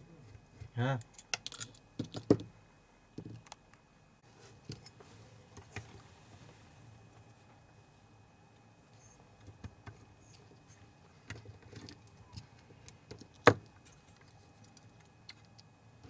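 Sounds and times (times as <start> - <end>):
small parts clicking and tapping: 1.0 - 2.5, 9.4 - 15.7.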